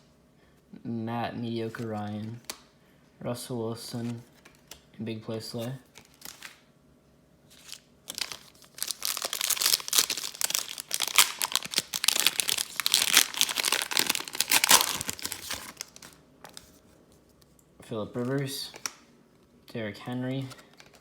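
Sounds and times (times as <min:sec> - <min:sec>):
plastic wrapper tearing and crinkling: 0:05.8 - 0:06.6, 0:07.5 - 0:16.7.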